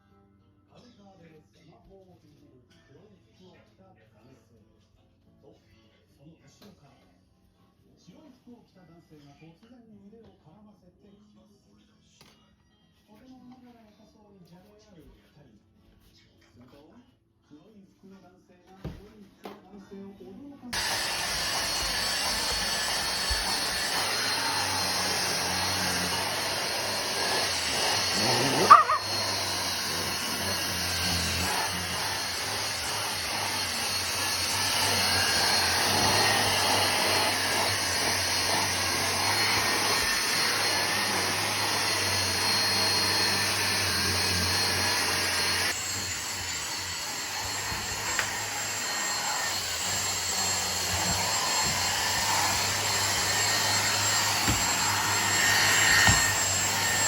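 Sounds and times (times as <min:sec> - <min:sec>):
vacuum cleaner whining: 0:20.8 - 0:57.0
dog barking: 0:28.2 - 0:29.2.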